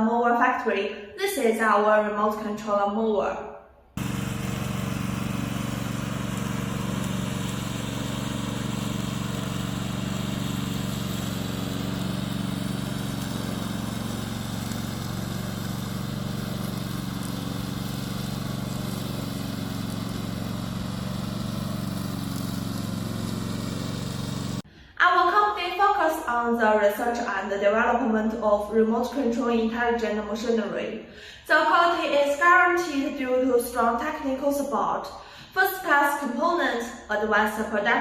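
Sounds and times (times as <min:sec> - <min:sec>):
lawn mower engine hum: 0:04.0 - 0:24.6.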